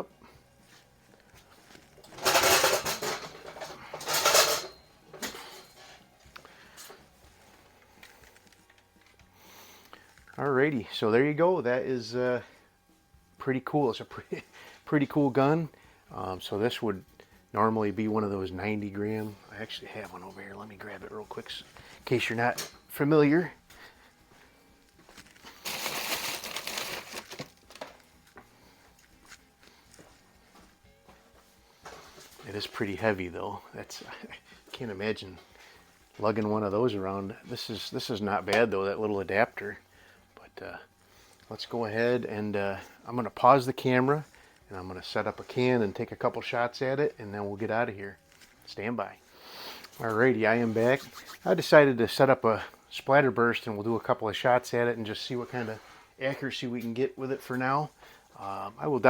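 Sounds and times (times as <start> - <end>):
objects clattering on workbench: 2.0 - 6.0
rustling and crinkling: 23.4 - 33.3, 47.6 - 51.7.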